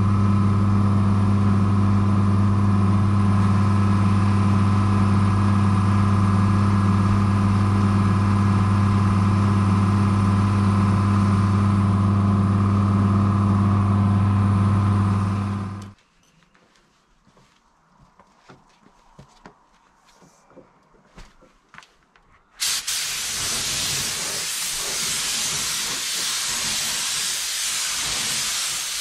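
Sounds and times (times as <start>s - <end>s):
motor humming and hissing: 0.0s - 16.0s, 22.6s - 29.0s.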